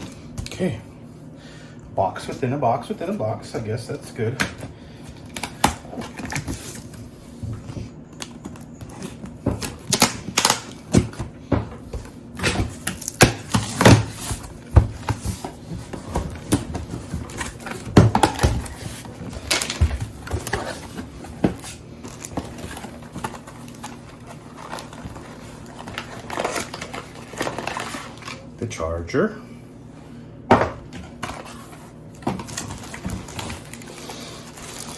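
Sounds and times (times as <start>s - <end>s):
packaging crinkling: 12.2s - 28.5s, 31.3s - 34.9s.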